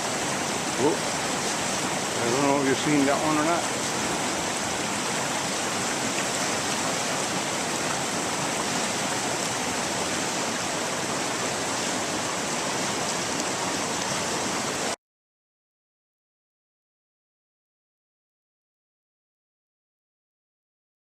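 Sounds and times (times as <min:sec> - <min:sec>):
river water rushing: 0:00.0 - 0:15.0.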